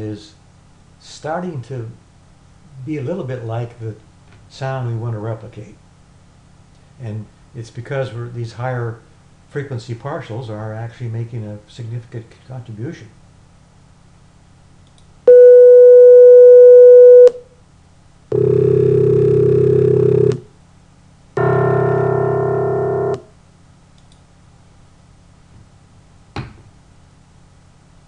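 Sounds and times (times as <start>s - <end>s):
synthesized sine tones: 15.3s - 17.4s, 18.3s - 20.4s, 21.4s - 23.3s
steady pure tone: 21.4s - 23.4s.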